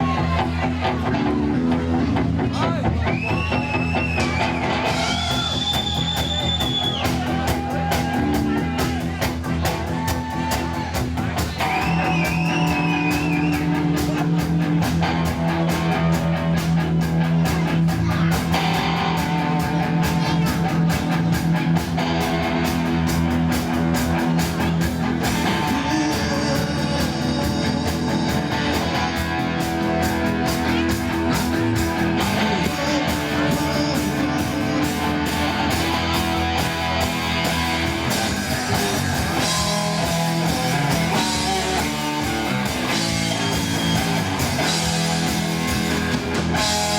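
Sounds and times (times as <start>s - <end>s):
electric guitar chords: 0.0s - 46.9s
instrumental rock music: 0.0s - 46.9s
steady drum beat: 0.0s - 46.9s.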